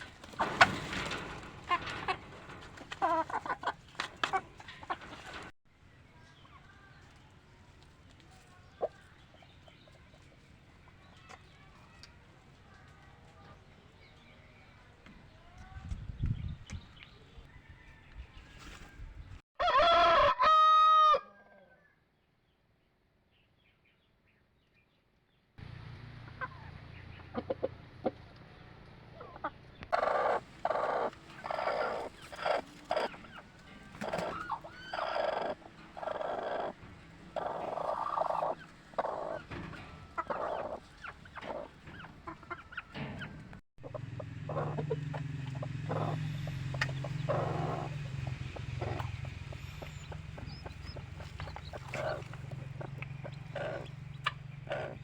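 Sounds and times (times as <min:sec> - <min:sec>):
chickens clucking: 0:00.0 - 0:05.5, 0:06.2 - 0:12.8, 0:26.2 - 0:55.0.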